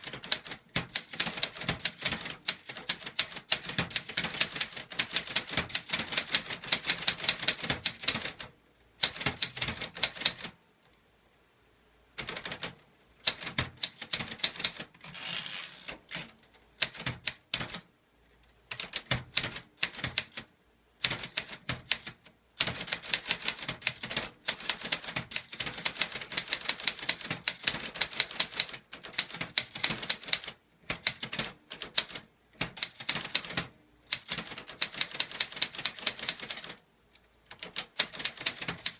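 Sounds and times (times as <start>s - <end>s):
typewriter key strikes: 12.2s - 14.3s
typewriter bell ring: 12.6s - 14.0s.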